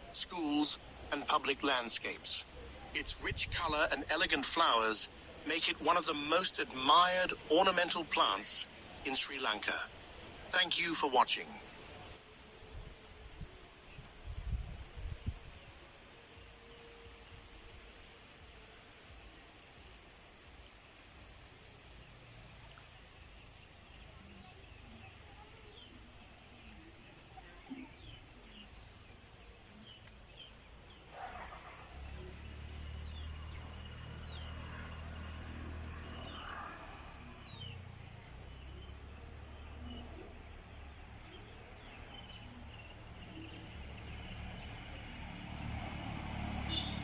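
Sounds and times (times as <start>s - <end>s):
small birds chirping: 15.5s - 46.0s, 46.7s - 47.0s
rustling: 16.6s - 32.5s
motor vehicle approaching: 27.1s - 47.0s
bird chirps: 46.7s - 47.0s.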